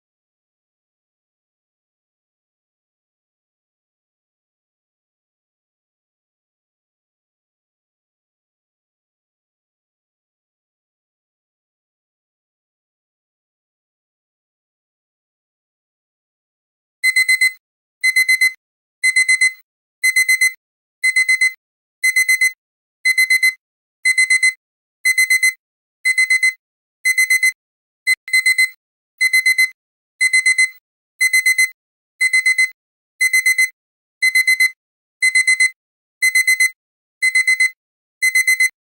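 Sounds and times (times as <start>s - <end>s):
digital timer alarm beeping: 17.0s - 38.7s.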